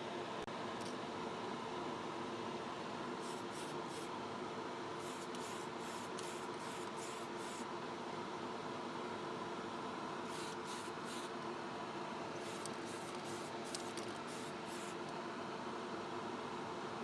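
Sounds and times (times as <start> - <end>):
steady hum: 2.9 - 8.6, 9.2 - 17.0
paint spray hissing bursts: 3.2 - 4.1, 5.0 - 7.6, 10.3 - 11.3, 12.4 - 15.0.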